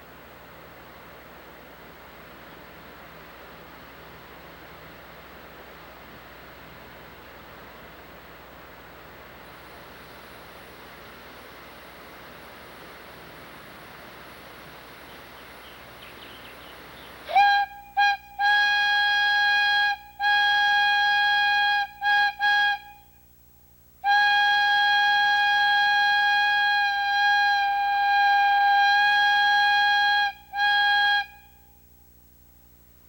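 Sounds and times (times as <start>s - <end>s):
steam whistle blasts: 16.2s - 23.4s, 24.0s - 32.0s.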